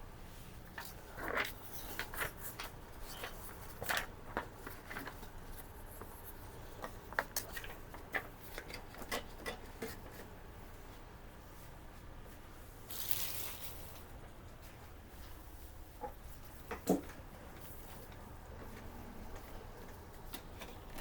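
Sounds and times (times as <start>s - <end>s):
small parts scraping: 12.9s - 13.9s.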